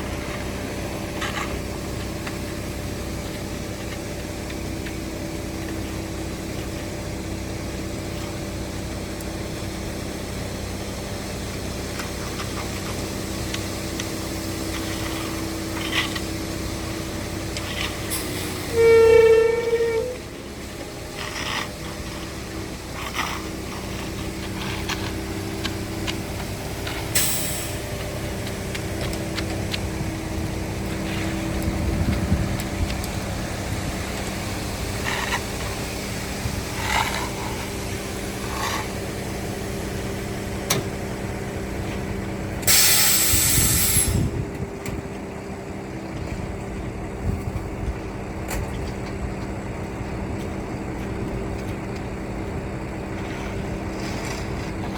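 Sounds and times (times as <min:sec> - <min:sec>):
diesel engine running: 0:00.0 - 0:54.9
loud air hiss: 0:42.6 - 0:44.3.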